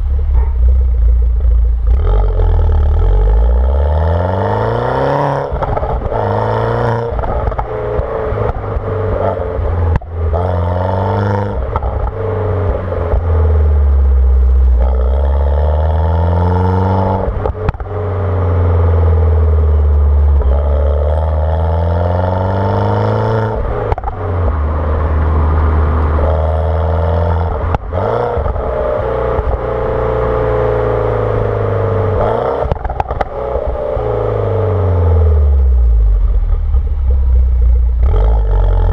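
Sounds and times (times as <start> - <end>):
car engine accelerating: 0.0 - 38.9
exhaust cracks and pops: 5.4 - 6.2, 7.0 - 10.4, 11.3 - 13.5, 16.9 - 18.0, 23.6 - 24.7, 32.2 - 33.9, 35.5 - 38.9.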